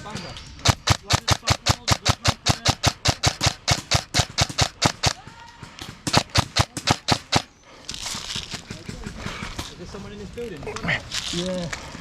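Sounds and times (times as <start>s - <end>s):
airsoft rifle shots: 0.6s - 7.5s.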